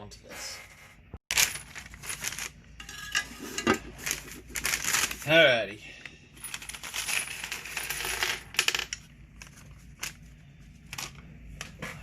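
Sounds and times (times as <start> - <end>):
small metal items clinking: 1.3 - 5.4, 6.4 - 10.2.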